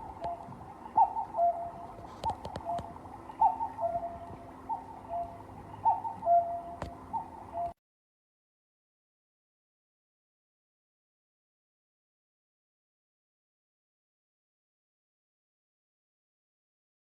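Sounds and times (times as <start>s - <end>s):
cuckoo clock calling: 0.0s - 7.8s
faint clock clicks: 1.8s - 3.5s.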